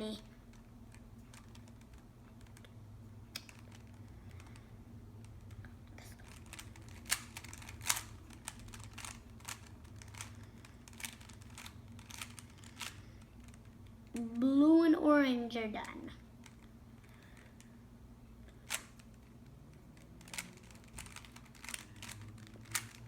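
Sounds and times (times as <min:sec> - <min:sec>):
faint steady hum: 0:00.0 - 0:23.0
plastic puzzle cube clicking: 0:06.2 - 0:13.6, 0:18.7 - 0:19.0, 0:20.0 - 0:23.0.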